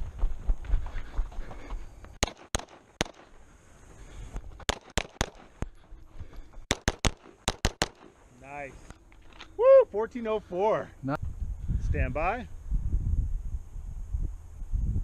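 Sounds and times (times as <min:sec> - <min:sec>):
pistol shots: 0:02.2 - 0:03.3, 0:04.7 - 0:05.5, 0:06.7 - 0:08.1.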